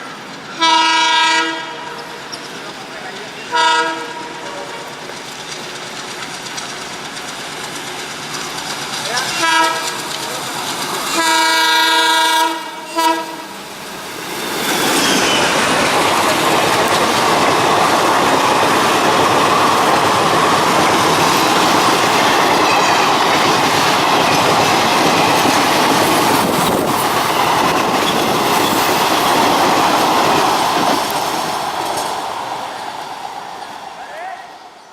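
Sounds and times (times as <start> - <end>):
wheels clacking on rails: 0.0 - 34.3
train rushing past roaring: 0.0 - 34.9
locomotive horn blasts: 0.6 - 1.9, 3.5 - 4.3, 9.3 - 10.0, 11.1 - 13.5.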